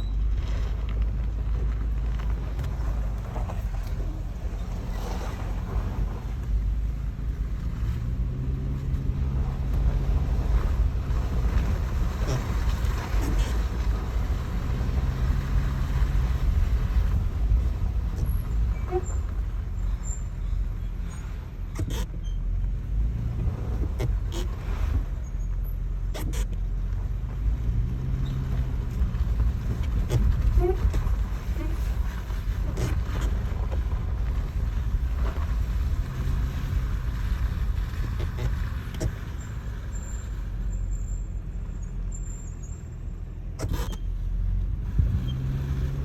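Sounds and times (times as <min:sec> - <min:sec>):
car engine rumbling: 0:00.0 - 0:46.0
faint high squeaks: 0:18.2 - 0:22.6, 0:24.0 - 0:26.7, 0:28.0 - 0:28.7, 0:29.8 - 0:33.4, 0:38.1 - 0:44.4.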